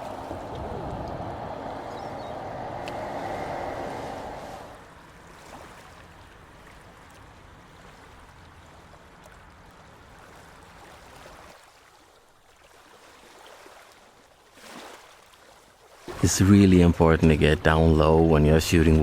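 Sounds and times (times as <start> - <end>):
low rumble: 0.0 - 5.0
sea water washing against rocks: 0.0 - 5.8.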